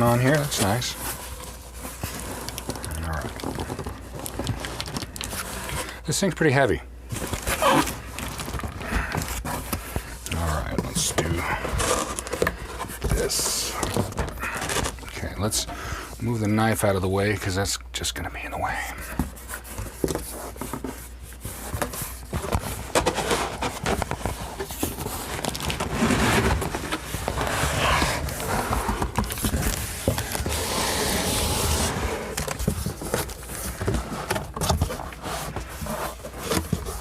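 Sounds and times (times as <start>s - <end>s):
cardboard box scraping and rustling: 0.0s - 5.9s, 10.4s - 15.6s, 19.2s - 37.0s.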